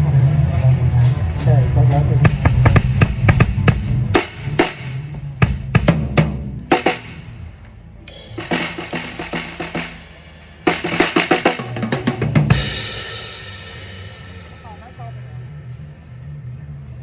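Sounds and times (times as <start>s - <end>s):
drum hits: 2.2s - 7.4s, 8.2s - 14.9s
cymbal ringing: 8.1s - 16.2s.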